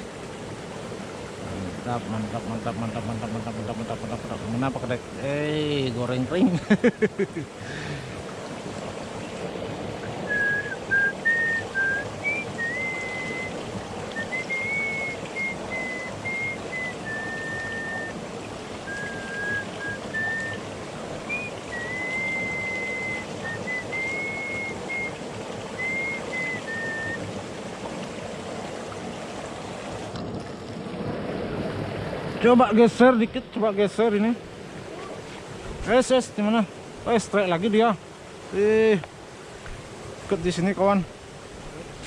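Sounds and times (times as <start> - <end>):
stream water rushing: 0.0 - 42.0
person whistling a slow tune: 10.3 - 18.2, 18.9 - 20.6, 21.3 - 27.2.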